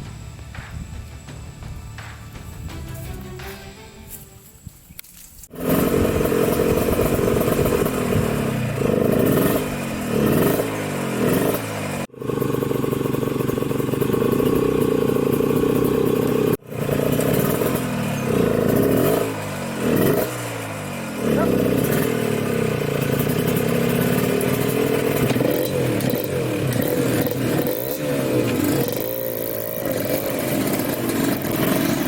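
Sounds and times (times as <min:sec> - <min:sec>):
dirt bike engine revving: 0:05.4 - 0:32.0.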